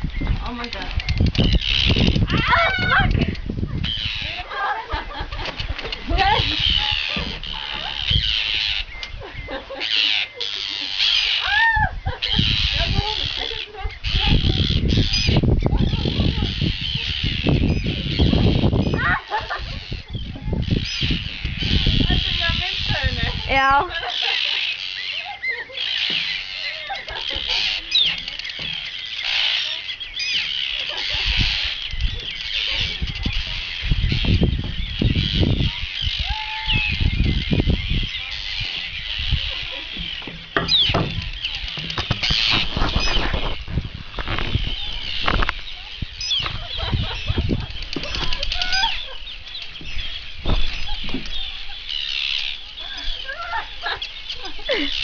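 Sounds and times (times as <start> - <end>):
terns calling harshly: 0.0 - 5.3, 6.1 - 55.0
low thumps: 38.6 - 45.7, 49.0 - 51.7.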